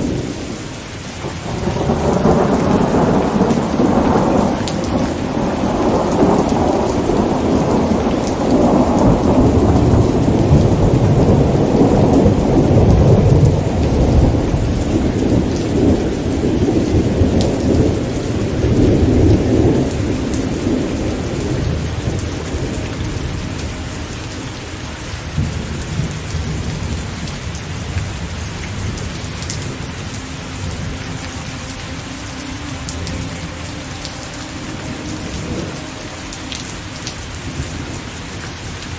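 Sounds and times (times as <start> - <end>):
steady rain: 0.0 - 38.9
rumble of thunder: 1.2 - 24.3, 25.2 - 31.1.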